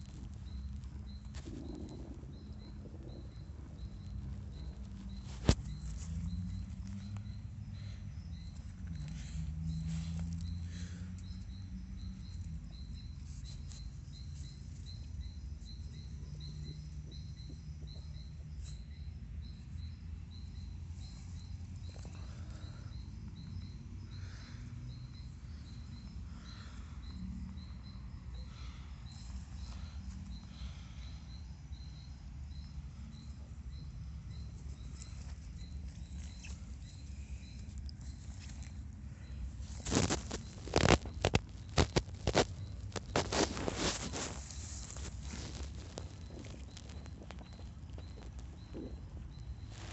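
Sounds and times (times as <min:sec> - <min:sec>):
faint high chirp: 0:27.6 - 0:49.9.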